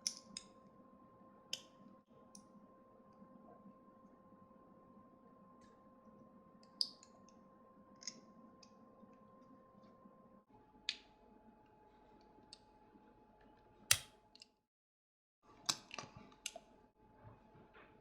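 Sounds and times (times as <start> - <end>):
faint steady hum: 0.0 - 13.9.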